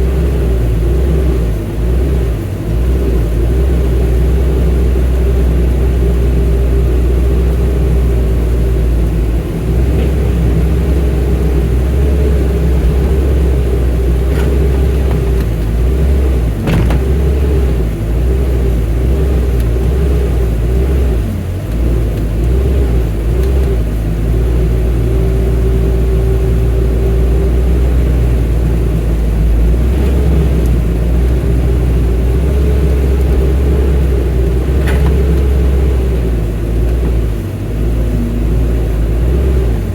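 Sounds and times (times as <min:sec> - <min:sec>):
excavator diesel engine droning: 0:00.0 - 0:39.9.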